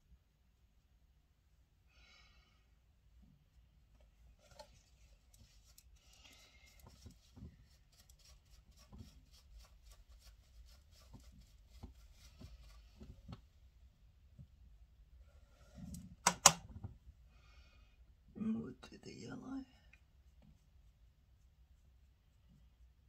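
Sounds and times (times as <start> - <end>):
brush on skin: 4.3 - 13.7, 19.8 - 23.0.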